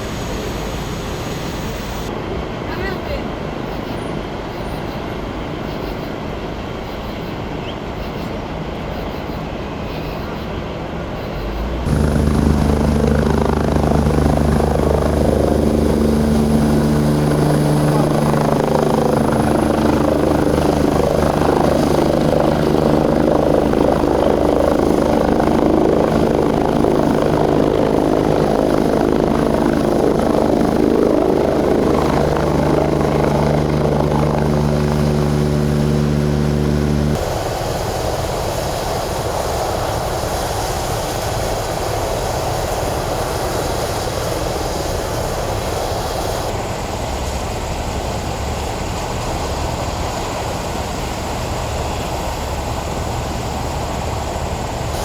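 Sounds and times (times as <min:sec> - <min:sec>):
heavy engine drone: 0:00.0 - 0:02.1, 0:11.4 - 0:37.3
road noise: 0:11.6 - 0:37.2
voices: 0:11.9 - 0:37.2.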